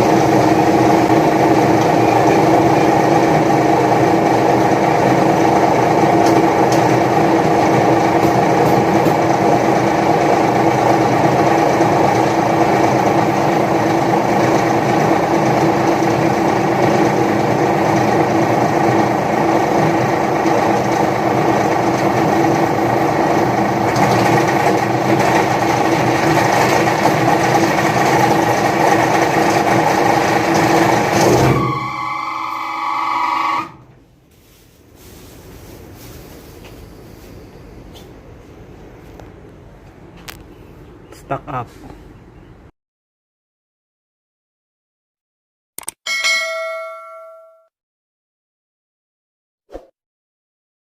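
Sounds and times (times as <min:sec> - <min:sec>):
paper shredder running: 0:00.0 - 0:31.9.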